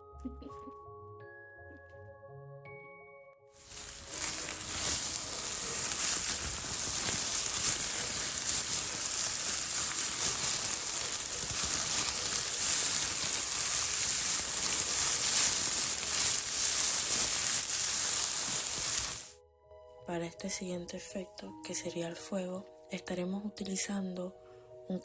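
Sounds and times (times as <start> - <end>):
plastic bag crumpling: 3.6 - 19.4.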